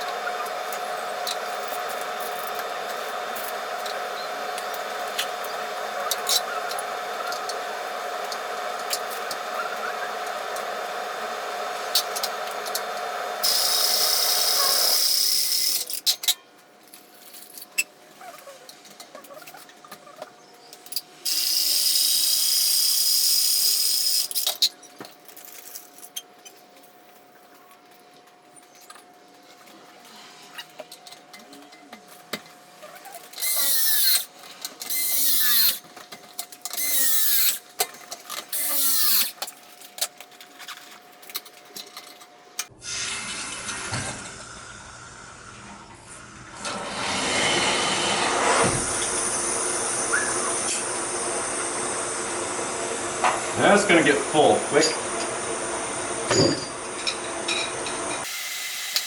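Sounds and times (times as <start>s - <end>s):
press tool motor whining: 0.0s - 15.9s, 33.2s - 35.9s, 36.7s - 37.7s, 38.4s - 39.4s
mechanical hum: 0.0s - 59.0s.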